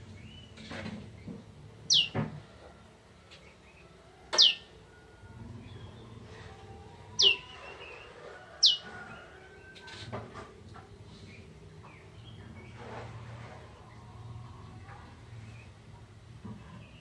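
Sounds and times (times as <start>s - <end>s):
bird sharp downward notes: 1.9s - 2.2s, 4.3s - 4.7s, 7.2s - 8.0s.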